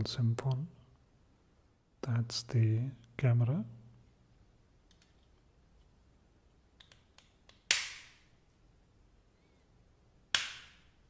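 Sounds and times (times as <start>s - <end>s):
plastic pen snapping: 6.8s - 8.2s, 10.3s - 10.9s.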